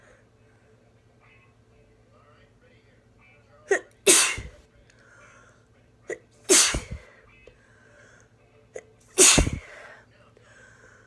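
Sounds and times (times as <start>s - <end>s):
person sneezing: 3.7s - 4.6s, 6.1s - 7.0s, 8.8s - 9.9s
sharp intake of breath: 4.1s - 4.6s, 6.5s - 7.1s, 9.2s - 9.9s.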